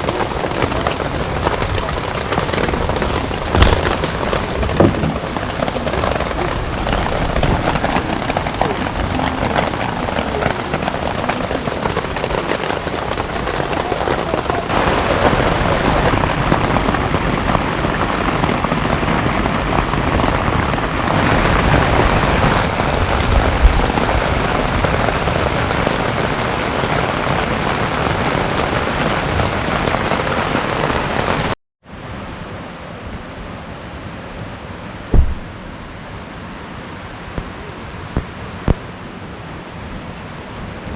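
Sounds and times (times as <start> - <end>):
heavy rain hiss: 0.0 - 31.5.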